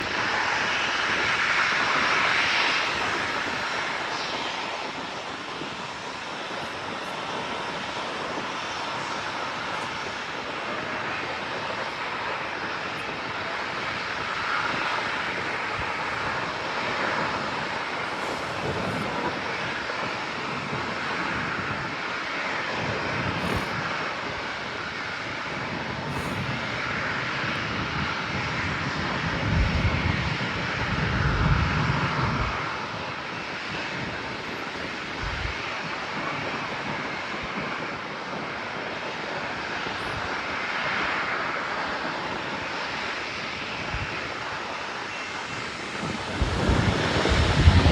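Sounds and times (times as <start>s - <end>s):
jet engines rushing: 0.0s - 47.9s.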